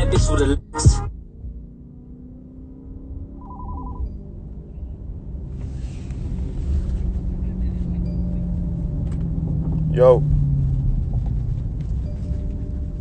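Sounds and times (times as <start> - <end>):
car road and engine rumble: 0.0 - 13.0
pulsing electronic beep: 3.3 - 4.9.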